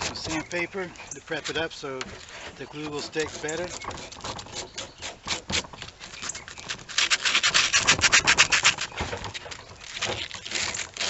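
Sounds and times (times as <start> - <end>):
sandpaper rubbing on shoe sole: 1.4 - 9.1, 9.9 - 11.0.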